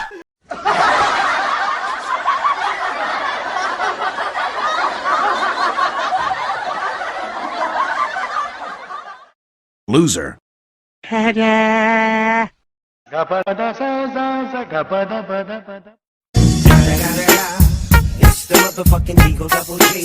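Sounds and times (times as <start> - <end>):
crowd laughing: 0.0 - 9.4.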